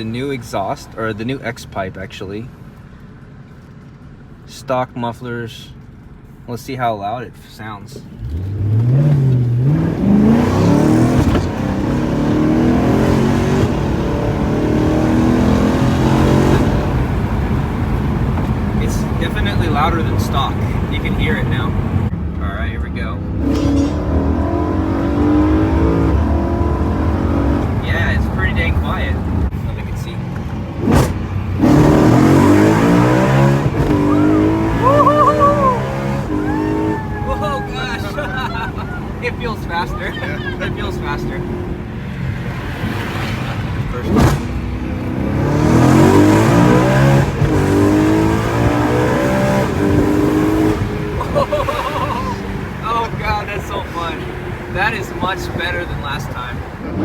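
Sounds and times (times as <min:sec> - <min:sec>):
engine accelerating through gears: 0:08.1 - 0:20.1, 0:23.2 - 0:28.5, 0:30.7 - 0:53.2.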